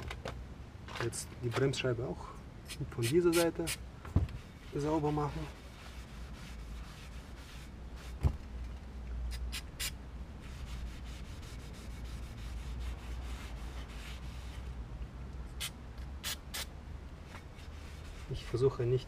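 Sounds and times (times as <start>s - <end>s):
cloth rubbing brake disc: 4.4s - 8.2s, 17.2s - 19.0s.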